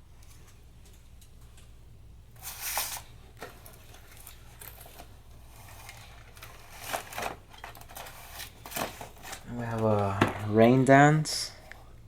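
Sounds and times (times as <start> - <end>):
packaging rustle: 2.4 - 10.3.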